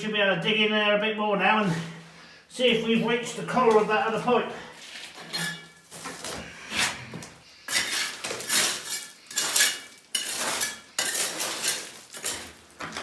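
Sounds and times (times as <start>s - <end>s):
metal tool scraping through rubble: 4.8s - 7.0s, 7.7s - 13.0s.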